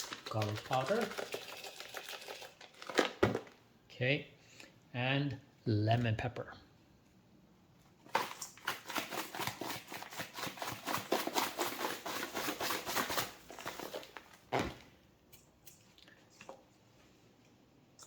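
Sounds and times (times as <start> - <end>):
seasoning shaker rattling: 0.0 - 2.7.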